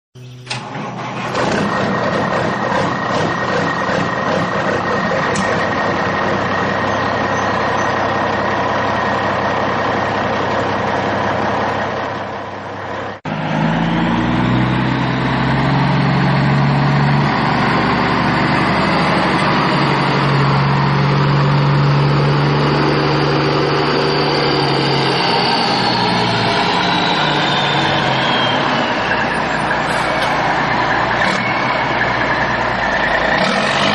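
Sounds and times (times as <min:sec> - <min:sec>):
construction machine engines: 0:00.2 - 0:33.9
deep engine tone rising and falling: 0:00.2 - 0:33.9.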